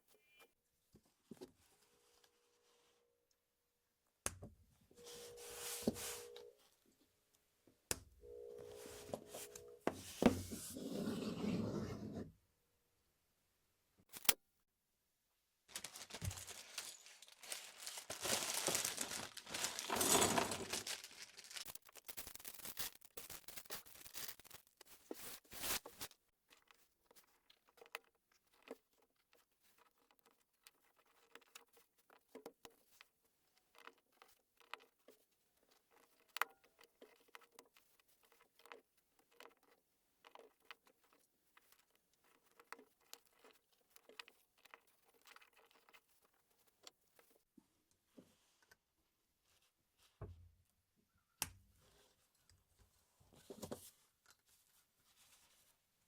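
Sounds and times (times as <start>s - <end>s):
plastic bag crinkling: 15.7s - 26.1s
plastic pieces clicking: 15.8s - 24.7s.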